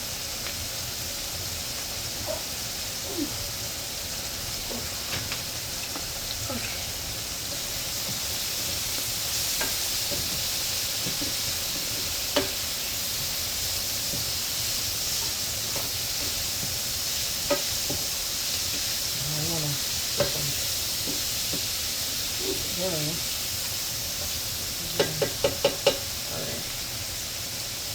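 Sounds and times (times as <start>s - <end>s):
scallops sizzling in hot oil: 0.0s - 27.9s.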